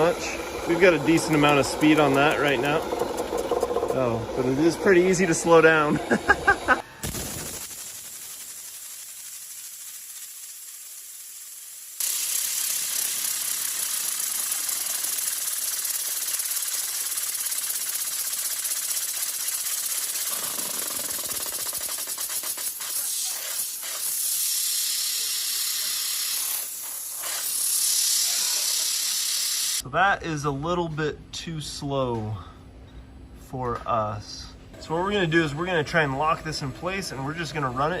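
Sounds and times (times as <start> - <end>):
waterjet stream hissing: 0.0 - 29.8.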